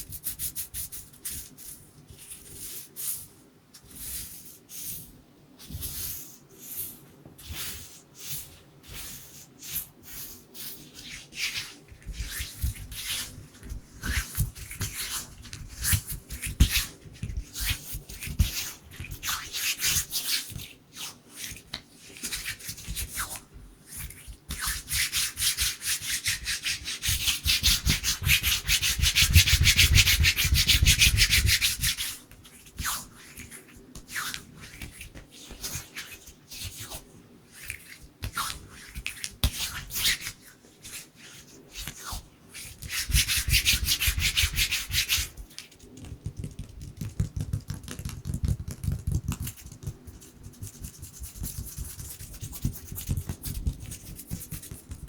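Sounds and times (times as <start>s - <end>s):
hands rubbing together: 21.0s - 55.0s.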